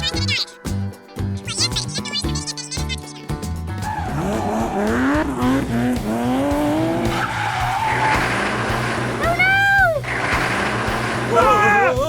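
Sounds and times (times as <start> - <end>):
music: 0.0 - 12.0
car engine revving: 3.8 - 12.0.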